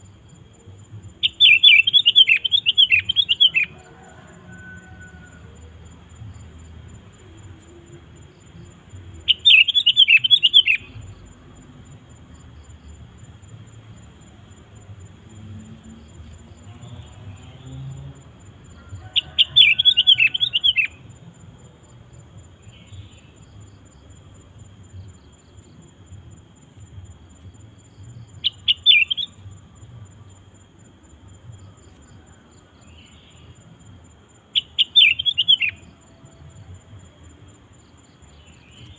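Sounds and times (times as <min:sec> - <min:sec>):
bird chattering song: 0:01.2 - 0:03.7, 0:09.2 - 0:11.2, 0:28.4 - 0:29.4, 0:34.6 - 0:35.8.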